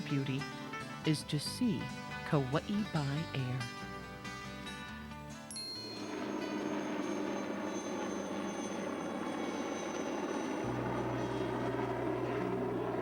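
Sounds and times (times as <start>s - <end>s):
helicopter engine and rotor: 5.6s - 13.0s
low hum: 5.8s - 13.0s.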